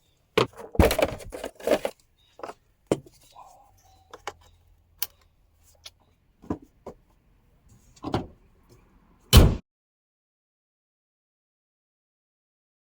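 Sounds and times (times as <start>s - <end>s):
loud thud: 9.4s - 9.6s.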